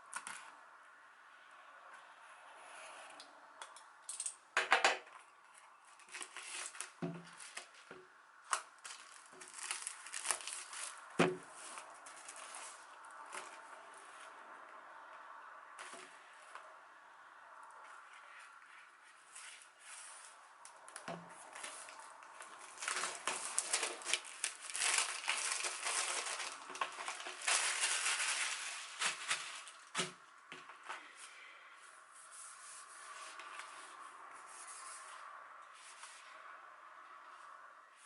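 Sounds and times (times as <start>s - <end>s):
packaging crinkling and tearing: 5.9s - 7.8s, 8.4s - 13.6s, 20.9s - 30.2s.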